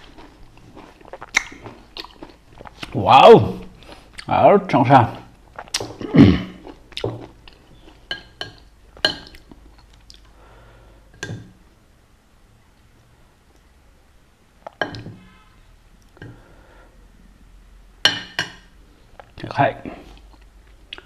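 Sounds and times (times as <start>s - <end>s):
person biting and chewing fruit: 0.0s - 3.0s, 5.4s - 8.2s
mouth sound: 5.0s - 6.6s
dishes clinking: 8.1s - 9.4s, 11.2s - 11.6s, 14.7s - 15.2s.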